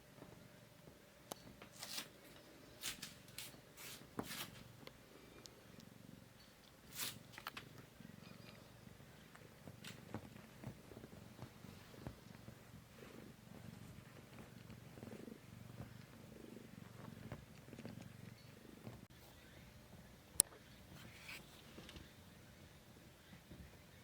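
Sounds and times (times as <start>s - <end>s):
scratchy rustling: 1.7s - 4.7s, 6.9s - 7.7s, 20.8s - 22.1s
kitten purring: 4.5s - 24.0s.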